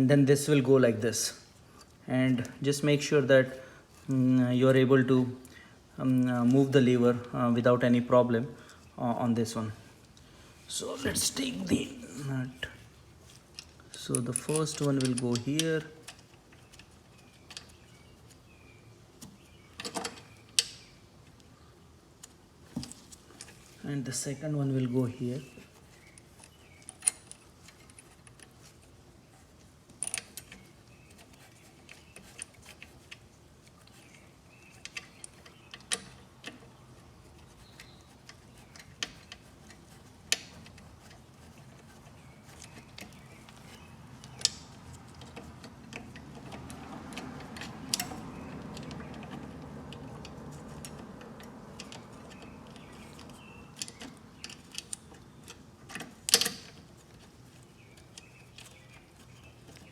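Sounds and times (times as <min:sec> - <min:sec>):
soft low handling noise: 0:06.0 - 0:59.9
small metallic clicks and taps: 0:29.9 - 0:59.9.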